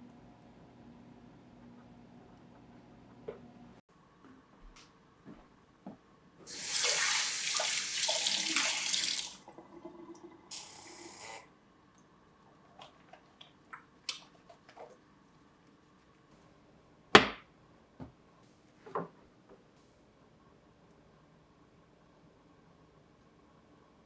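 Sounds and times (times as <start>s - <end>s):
water running: 6.5s - 11.4s.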